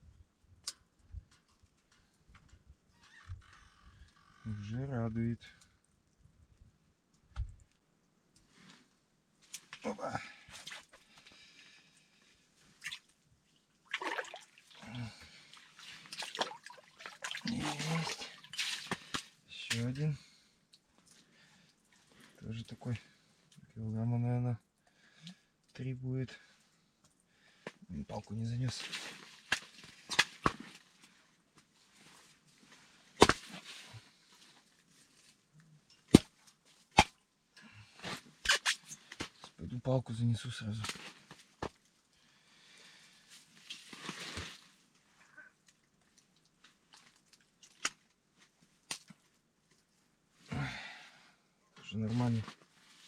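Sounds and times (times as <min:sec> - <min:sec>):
water splashes and drips: 0:10.4 - 0:11.3, 0:12.6 - 0:20.1, 0:45.6 - 0:48.2.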